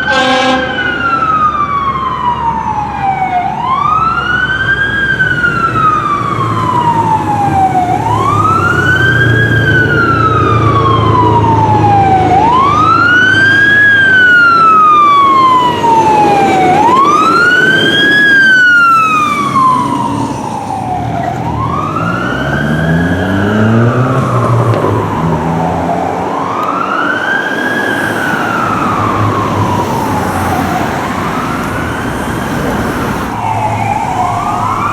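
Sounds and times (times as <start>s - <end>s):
fire truck siren wailing: 0.0s - 34.9s
heavy engine running: 15.4s - 34.9s.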